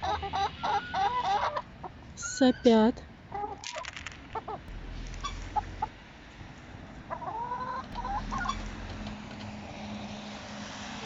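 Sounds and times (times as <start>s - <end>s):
hens calling and clucking: 7.1s - 9.4s.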